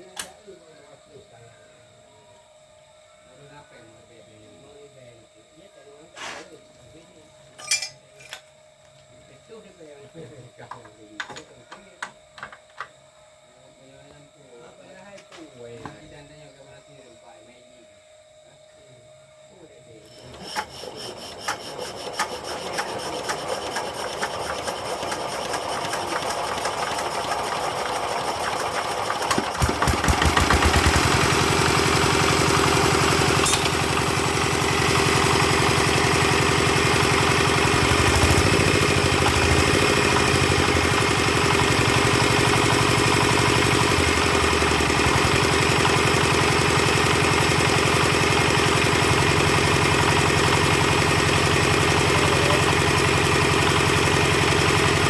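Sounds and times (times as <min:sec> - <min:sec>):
engine being hand-cranked and running: 0:20.1 - 0:55.0.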